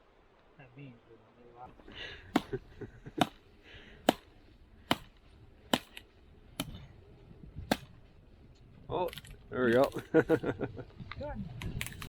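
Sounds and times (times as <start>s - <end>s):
axe chopping wood: 2.3s - 2.6s, 3.2s - 3.4s, 4.0s - 6.0s, 6.6s - 6.8s, 7.7s - 7.9s.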